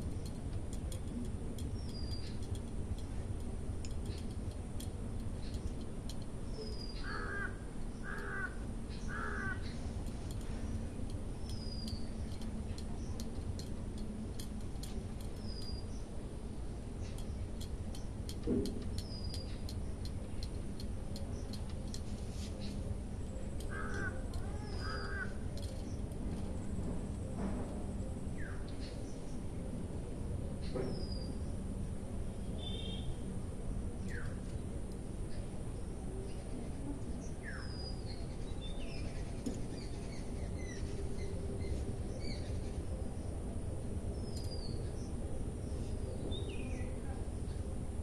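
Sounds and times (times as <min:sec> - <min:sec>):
low background noise: 0:00.0 - 0:48.0
bird calling: 0:06.5 - 0:10.6, 0:22.6 - 0:26.2.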